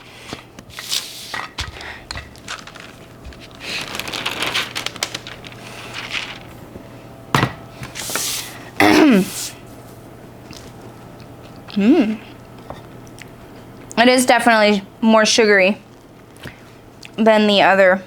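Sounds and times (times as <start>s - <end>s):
rustling: 0.6s - 6.8s.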